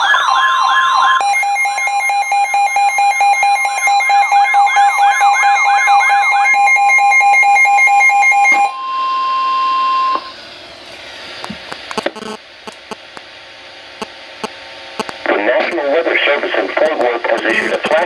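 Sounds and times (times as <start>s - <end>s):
rapidly pulsing beeps: 0.0s - 8.3s, 11.9s - 13.1s, 14.0s - 18.0s
electronic siren wail: 0.0s - 10.4s
faint radio static: 11.4s - 13.2s, 14.0s - 18.0s
steady electronic tone: 11.4s - 13.2s, 14.0s - 15.3s.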